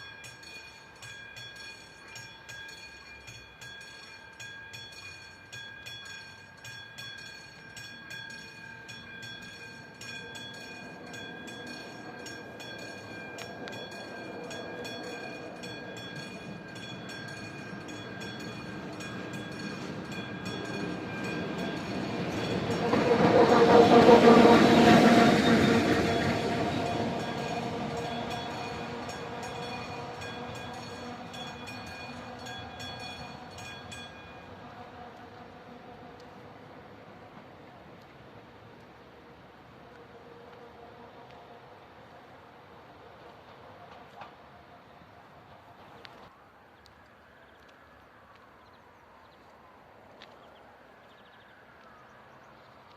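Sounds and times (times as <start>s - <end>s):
crossing warning bell ringing: 0.0s - 36.5s
electric locomotive passing: 0.0s - 52.9s.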